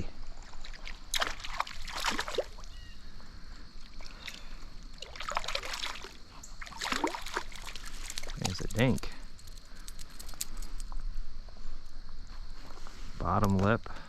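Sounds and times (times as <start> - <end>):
fish splashing at surface: 0.7 - 2.7, 5.0 - 8.6.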